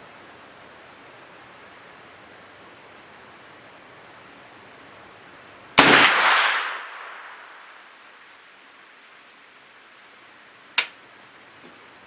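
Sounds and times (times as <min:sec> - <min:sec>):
background hiss: 0:00.0 - 0:12.0
gunshot: 0:05.8 - 0:07.2.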